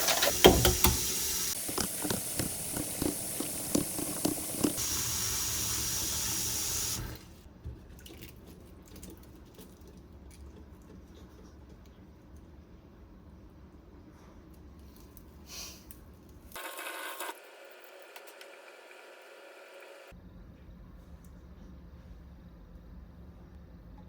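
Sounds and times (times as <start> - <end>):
water running from a tap: 0.0 - 7.4.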